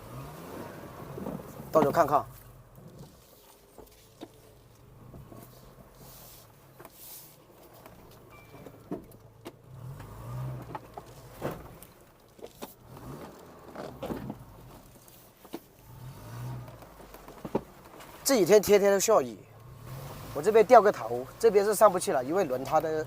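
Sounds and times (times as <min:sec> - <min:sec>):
suv engine running low: 0:00.0 - 0:23.0
sharp knocks and clunks: 0:08.3 - 0:14.4, 0:17.2 - 0:18.1.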